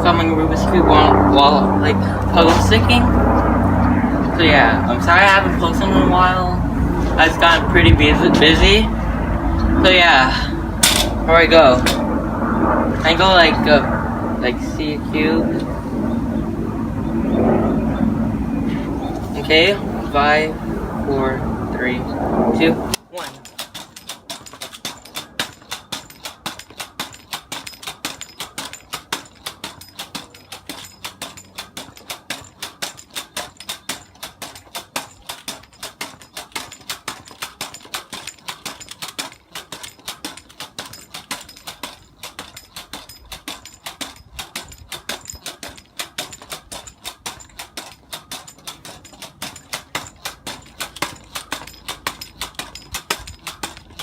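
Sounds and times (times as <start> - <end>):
pogo stick bouncing: 23.0 - 54.0.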